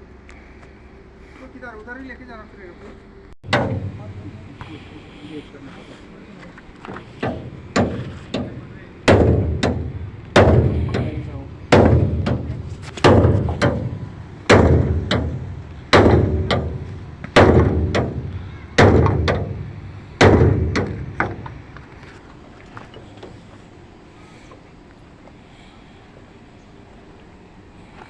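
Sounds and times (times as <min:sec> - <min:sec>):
heavy thuds with ringing decay: 0:03.4 - 0:04.9, 0:07.0 - 0:21.7
smaller knock: 0:03.5 - 0:04.1.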